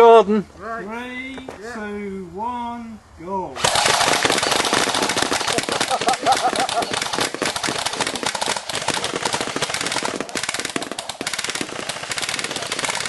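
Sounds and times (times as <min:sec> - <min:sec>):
airsoft guns firing rapidly: 0:03.6 - 0:13.0.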